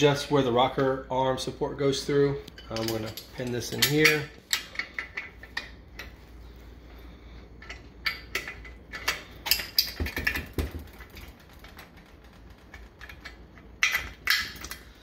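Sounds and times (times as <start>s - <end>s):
metal tool clicking and clinking: 2.5s - 6.2s, 13.0s - 15.0s.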